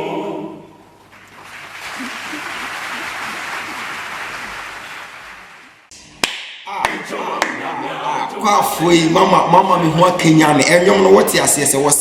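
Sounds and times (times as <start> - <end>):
choir singing: 0.0 - 0.9, 6.7 - 9.1
congregation applauding: 1.1 - 5.9.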